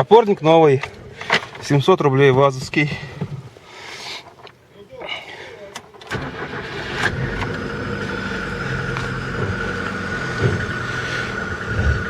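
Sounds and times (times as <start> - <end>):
car engine idling: 4.2 - 12.0.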